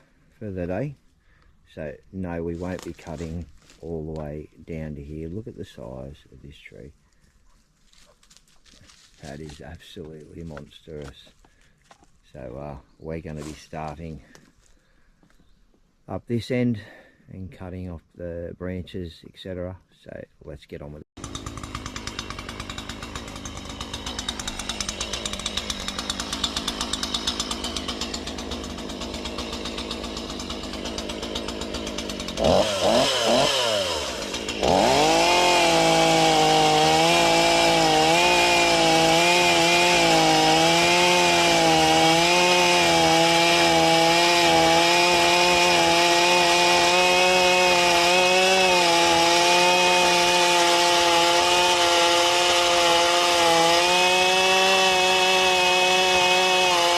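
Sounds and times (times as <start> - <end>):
chainsaw idling and revving: 2.4 - 4.3, 8.8 - 11.4, 21.2 - 56.9.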